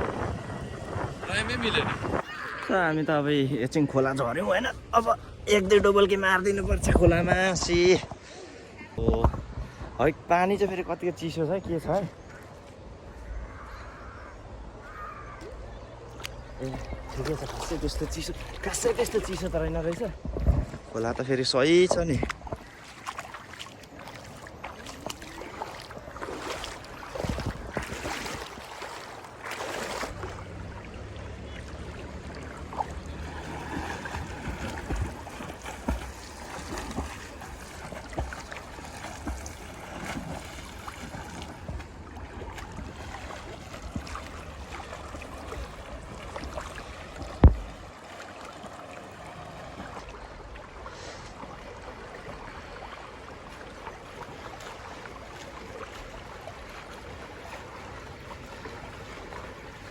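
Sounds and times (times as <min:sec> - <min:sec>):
river water rushing and splashing: 0:14.4 - 0:59.9.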